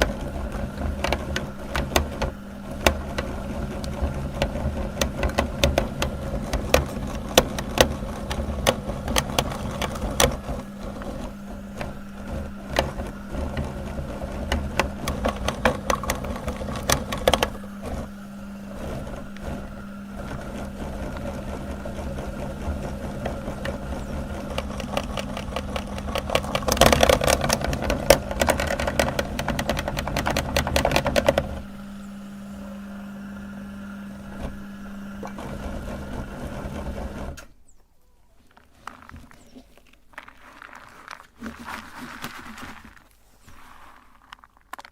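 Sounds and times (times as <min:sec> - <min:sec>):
meat grinder motor humming: 0:00.0 - 0:37.5
soap crackling and crunching: 0:38.4 - 0:44.9.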